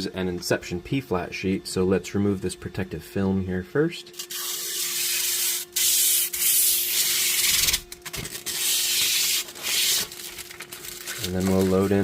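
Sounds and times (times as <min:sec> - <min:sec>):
plastic film being peeled: 0:04.2 - 0:12.0.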